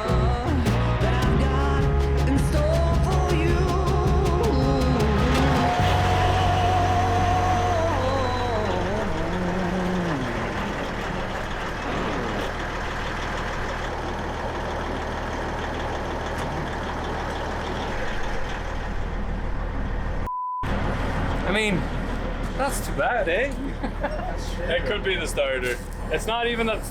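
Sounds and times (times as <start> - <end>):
song playing: 0.0 - 12.4
engine starter cranking: 0.2 - 19.6.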